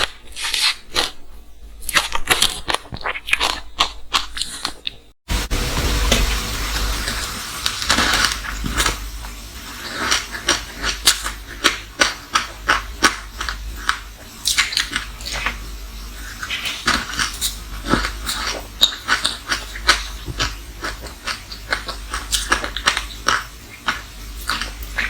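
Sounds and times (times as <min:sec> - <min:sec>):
chewing crunchy ice: 0:01.8 - 0:05.0.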